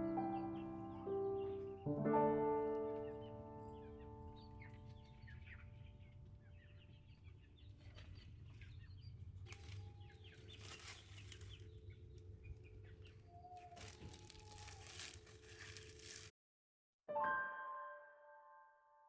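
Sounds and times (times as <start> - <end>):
rustling: 7.7 - 16.3.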